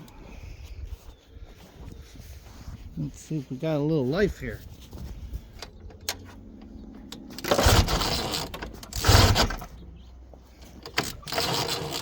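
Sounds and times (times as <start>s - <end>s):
recoil starter cranking engine: 5.6s - 9.8s, 10.6s - 12.0s.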